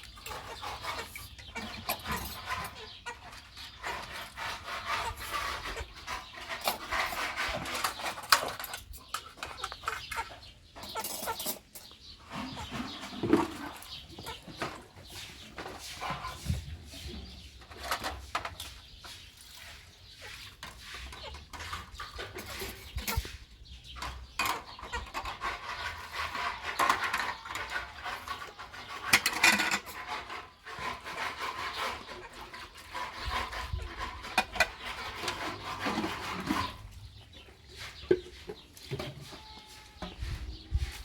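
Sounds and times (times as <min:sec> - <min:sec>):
birds calling: 0:00.0 - 0:41.0.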